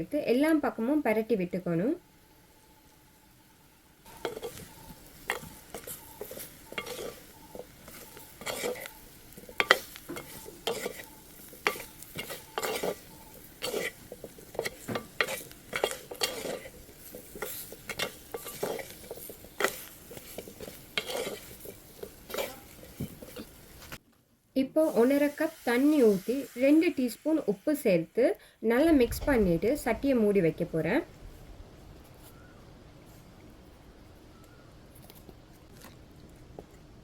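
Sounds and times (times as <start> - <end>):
food sizzling in oil: 0.2 - 24.0, 24.6 - 31.0
spoon scraping a pan: 4.1 - 23.9.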